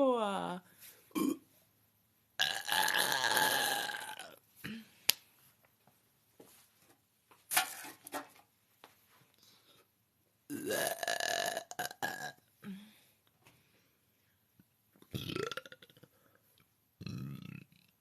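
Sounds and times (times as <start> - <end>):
woman burping loudly: 1.1 - 1.4, 2.4 - 4.8, 10.5 - 12.8, 15.1 - 16.1.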